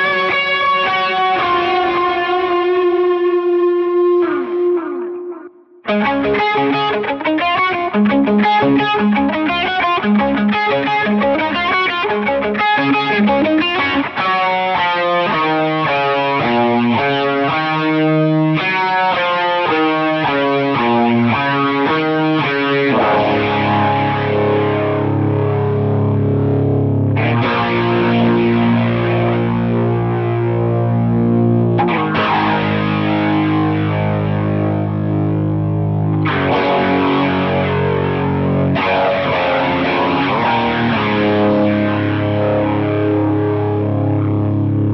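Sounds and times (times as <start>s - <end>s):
electric guitar with overdrive: 0.0s - 44.9s.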